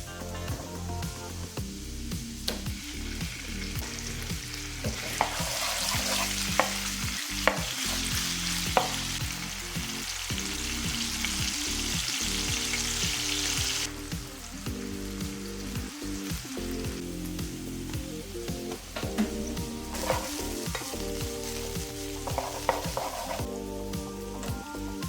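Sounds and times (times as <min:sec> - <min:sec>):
food sizzling in frying pan: 0:00.4 - 0:24.9
utensil tapping pan: 0:04.8 - 0:09.2, 0:18.6 - 0:21.0, 0:21.8 - 0:23.5.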